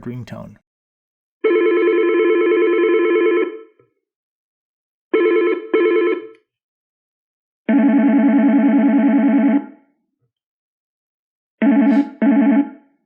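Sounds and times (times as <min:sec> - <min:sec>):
trilling electronic phone ring: 0:01.4 - 0:03.7, 0:05.2 - 0:06.3, 0:11.6 - 0:12.9
lower-pitched ringtone: 0:11.6 - 0:12.7.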